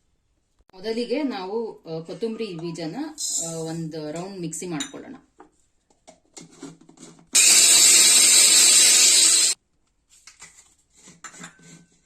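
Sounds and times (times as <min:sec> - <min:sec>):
mixer grinder grinding seeds: 0:07.4 - 0:09.6.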